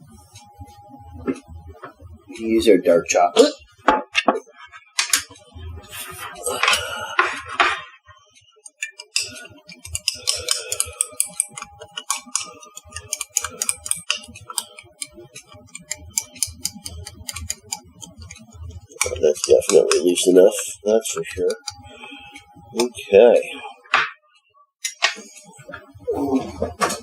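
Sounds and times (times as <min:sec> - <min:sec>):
hands clicking and rustling: 0:08.7 - 0:20.3.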